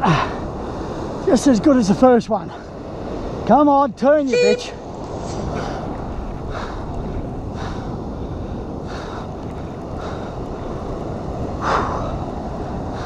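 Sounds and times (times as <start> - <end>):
wind noise on microphone: 4.1 - 13.0.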